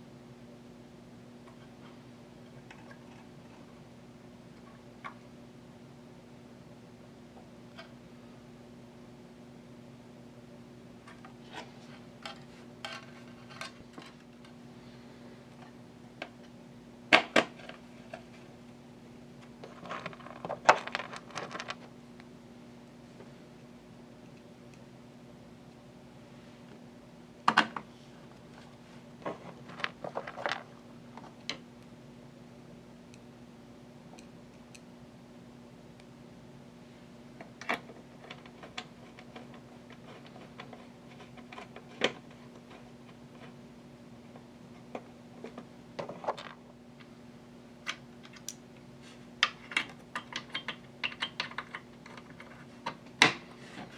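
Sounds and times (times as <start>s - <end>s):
faint steady hum: 0.0s - 53.9s
tools clicking and tapping: 49.4s - 53.0s.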